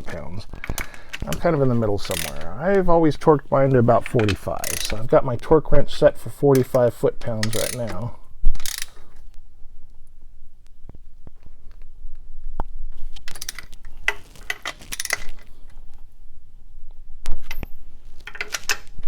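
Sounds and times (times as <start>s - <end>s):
sharp metallic clicks and clinks: 0.6s - 2.5s, 4.0s - 5.1s, 6.6s - 9.2s
torque wrench ratcheting: 0.8s - 2.5s, 4.1s - 5.1s, 6.5s - 9.2s, 13.3s - 15.4s.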